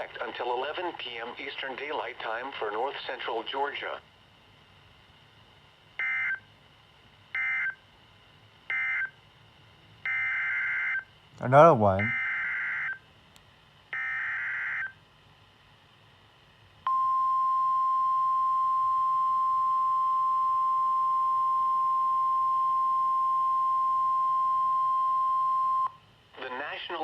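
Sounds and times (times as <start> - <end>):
steady warning alarm tone: 6.0 - 6.4, 7.4 - 7.8, 8.7 - 9.2, 10.0 - 13.0, 14.0 - 15.0, 16.9 - 25.9.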